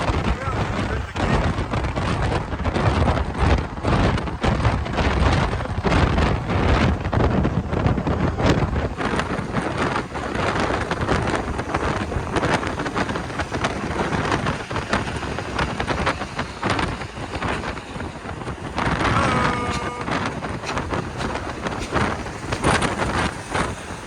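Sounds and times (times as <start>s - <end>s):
vehicle road noise: 0.0s - 24.0s
wind buffeting microphone: 0.0s - 24.0s
steady pitched tone: 19.0s - 23.1s.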